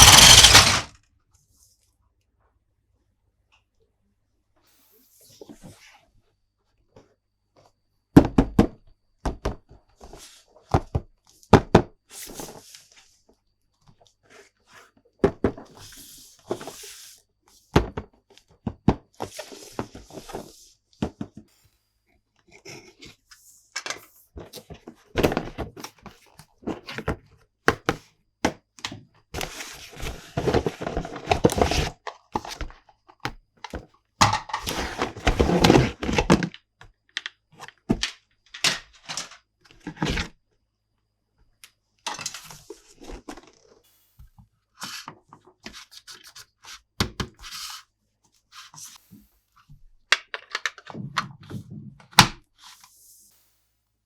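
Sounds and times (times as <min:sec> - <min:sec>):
packaging rustling: 0:00.0 - 0:00.9
plastic toy parts clicking: 0:00.0 - 0:00.9.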